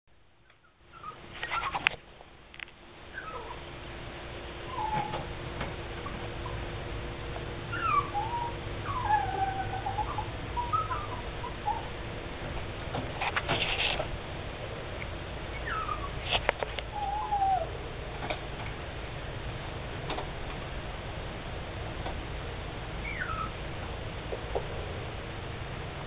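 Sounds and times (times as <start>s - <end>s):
dogs whining and whimpering: 0.6s - 1.9s, 3.1s - 3.7s, 4.6s - 5.4s, 7.7s - 12.0s, 15.5s - 17.8s, 23.0s - 23.6s.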